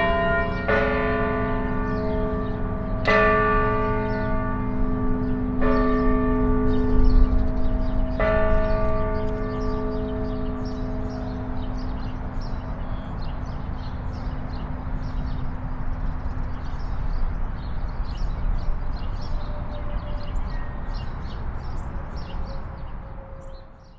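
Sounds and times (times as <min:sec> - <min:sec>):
church bell hum: 0:00.0 - 0:14.6
wind buffeting microphone: 0:00.7 - 0:19.4.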